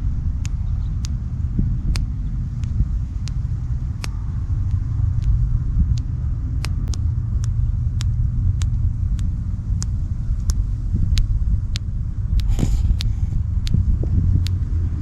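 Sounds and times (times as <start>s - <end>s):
sharp thumb pops: 0.0s - 15.0s
steady low rumble: 0.0s - 15.0s.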